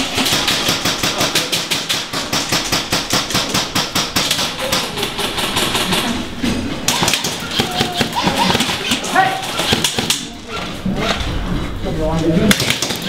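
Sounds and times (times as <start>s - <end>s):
airsoft guns firing rapidly: 0.0s - 6.2s, 6.9s - 10.3s, 12.5s - 13.0s.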